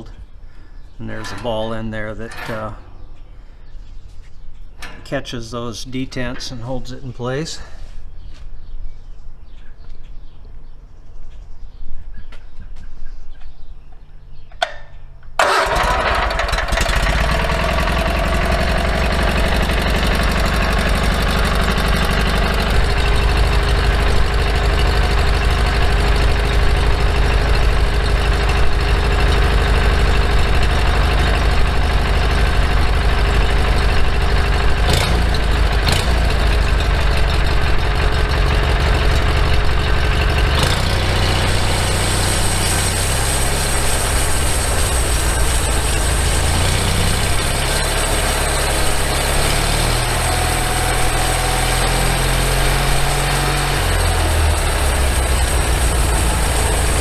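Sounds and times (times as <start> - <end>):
small gasoline engine running: 15.4 - 57.0.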